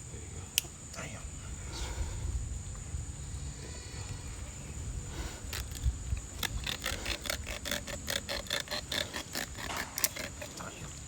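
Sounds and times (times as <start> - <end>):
saw scraping through tusk: 5.2 - 10.8.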